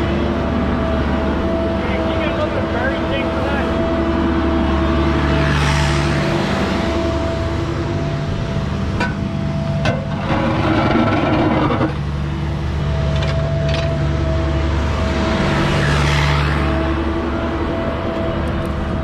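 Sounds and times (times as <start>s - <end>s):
diesel excavator with hydraulic whine: 0.0s - 19.0s
rough scraping: 9.9s - 12.0s.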